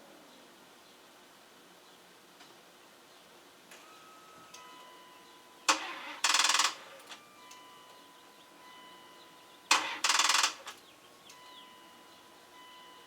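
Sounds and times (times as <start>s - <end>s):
starter motor clicking: 5.7s - 7.2s, 9.7s - 10.8s.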